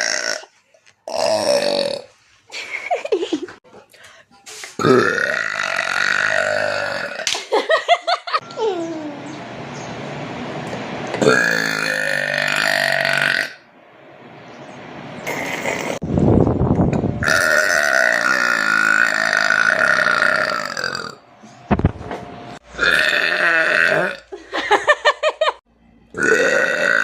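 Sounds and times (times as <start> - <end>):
woman burping: 4.8 - 7.3, 22.8 - 24.3.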